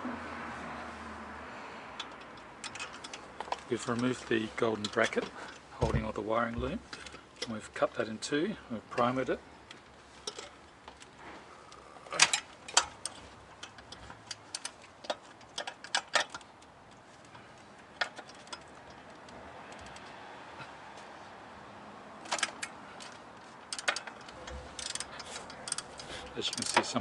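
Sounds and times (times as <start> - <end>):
hand tools clinking against metal: 2.0 - 7.7, 10.1 - 20.0, 22.2 - 27.0.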